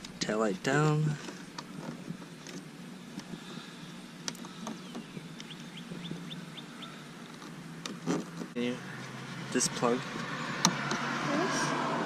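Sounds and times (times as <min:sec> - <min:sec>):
small bird chirping: 0:03.0 - 0:07.3.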